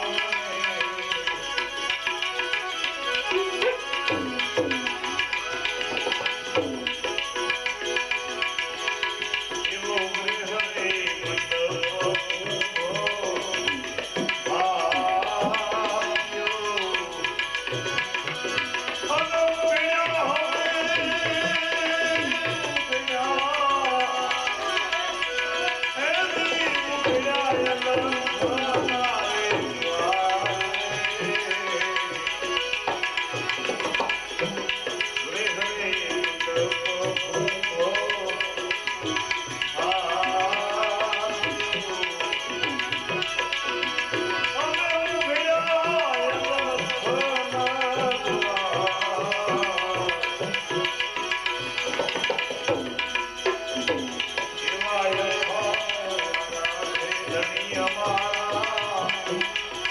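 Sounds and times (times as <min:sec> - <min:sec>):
tabla rhythm: 0:00.0 - 0:59.9.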